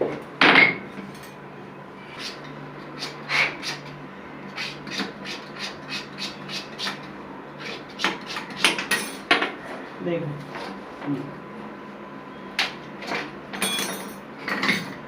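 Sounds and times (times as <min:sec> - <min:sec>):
hand tool scraping strokes: 0:02.1 - 0:02.4.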